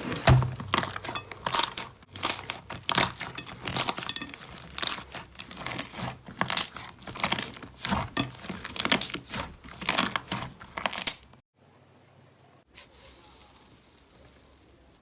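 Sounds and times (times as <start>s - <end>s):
slime squishing by hand: 0.0s - 11.4s.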